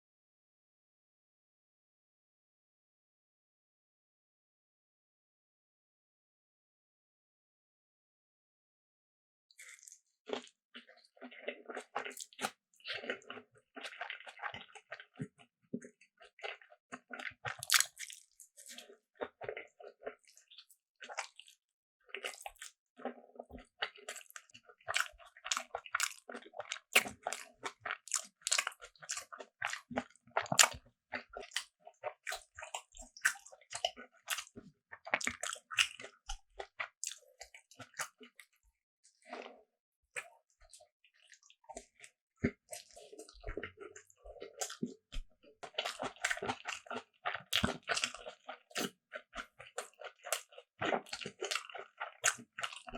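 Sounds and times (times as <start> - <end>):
crunchy chewing: 9.6 - 15.4, 16.2 - 38.5, 40.2 - 52.9.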